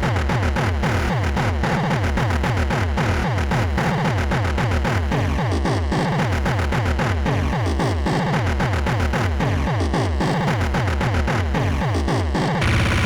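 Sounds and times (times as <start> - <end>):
fast electronic bass line: 10.7 - 13.0.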